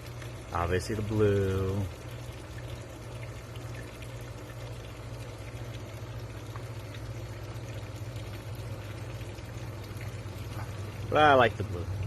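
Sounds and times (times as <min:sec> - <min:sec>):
water running: 0:00.0 - 0:12.0.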